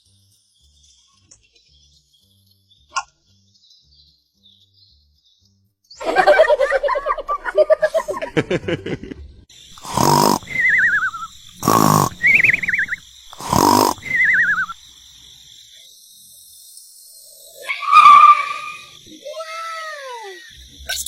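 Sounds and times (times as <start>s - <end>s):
cartoon snoring: 9.8s - 14.8s.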